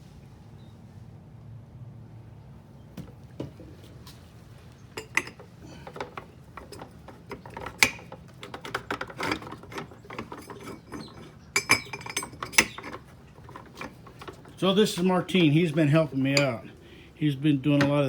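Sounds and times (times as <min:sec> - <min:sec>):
metal parts and tools clicking: 0:05.0 - 0:16.8.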